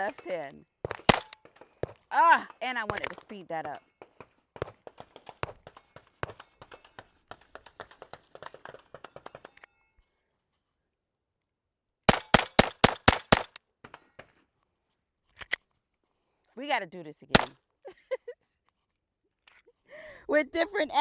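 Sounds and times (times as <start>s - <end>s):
pistol shots fired rapidly: 1.0s - 1.4s, 12.1s - 13.6s.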